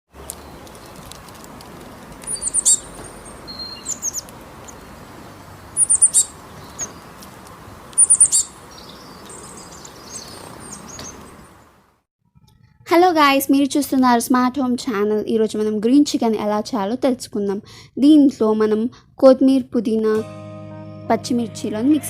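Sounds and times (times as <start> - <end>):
small birds chirping: 0.2 - 11.8.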